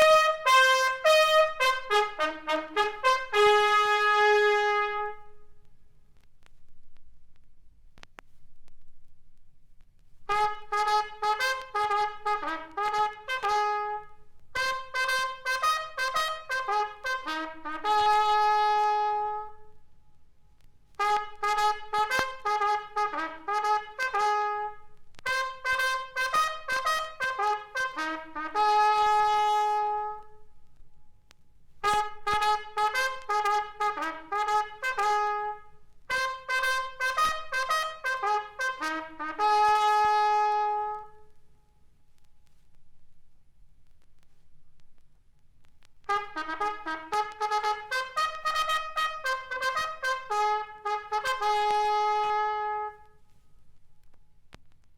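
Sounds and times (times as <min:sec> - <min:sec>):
bugle call: 0:00.0 - 0:05.4, 0:10.3 - 0:19.7, 0:21.0 - 0:30.4, 0:31.8 - 0:41.3, 0:46.1 - 0:53.1.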